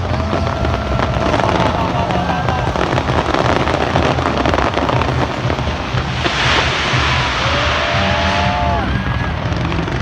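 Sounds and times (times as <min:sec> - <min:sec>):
fireworks bangs and crackles: 0:00.0 - 0:10.0
fireworks hissing burst: 0:00.0 - 0:10.0.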